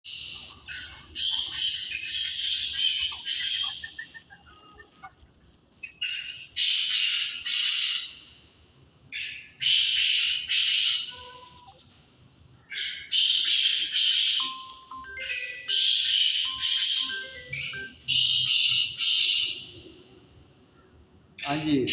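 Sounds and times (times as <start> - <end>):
bird harsh grating calls: 0.1 - 5.2, 6.0 - 8.4, 9.5 - 11.7, 12.7 - 14.4, 18.1 - 19.8.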